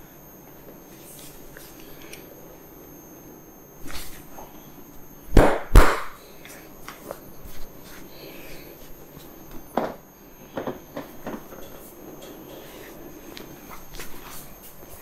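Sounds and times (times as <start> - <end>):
hand slaps on skin: 5.4 - 6.2.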